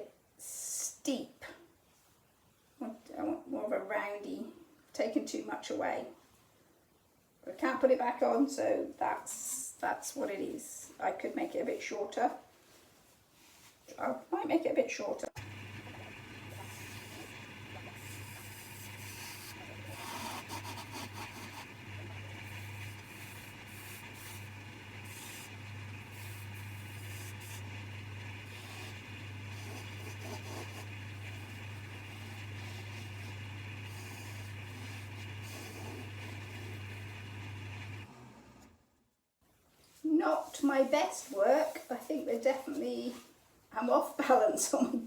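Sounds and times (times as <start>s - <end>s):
chisel scraping spinning wood: 15.4s - 38.8s
lathe motor hum: 15.4s - 38.8s.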